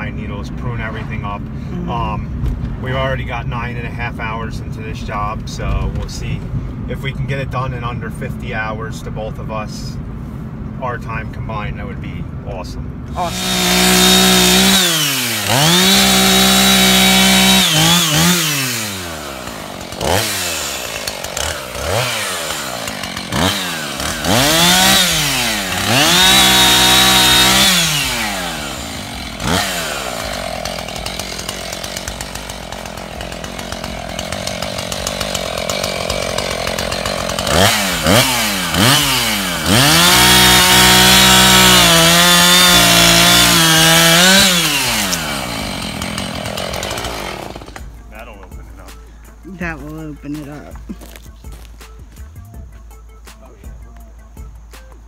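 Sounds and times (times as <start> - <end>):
string trimmer engine revving: 13.1 - 48.0.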